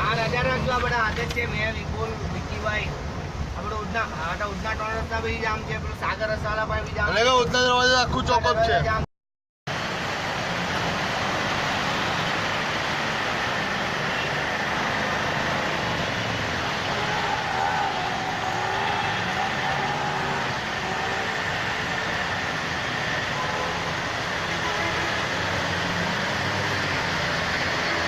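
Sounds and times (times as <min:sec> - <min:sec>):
heavy rain: 0:09.7 - 0:28.0
vehicle driving through water: 0:09.7 - 0:28.0.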